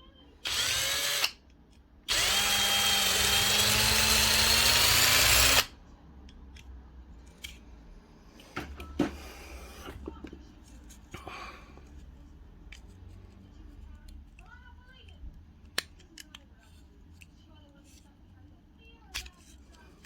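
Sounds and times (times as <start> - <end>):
small power drill drilling: 0.4 - 1.4, 2.1 - 5.7.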